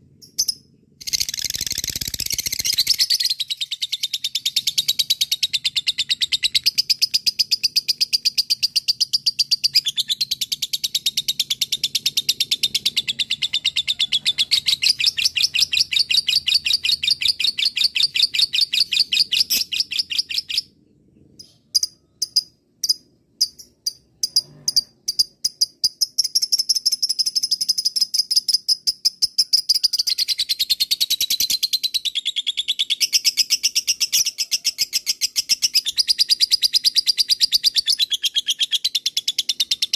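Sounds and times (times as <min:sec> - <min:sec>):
lovebird chattering trill: 0:00.2 - 0:20.7.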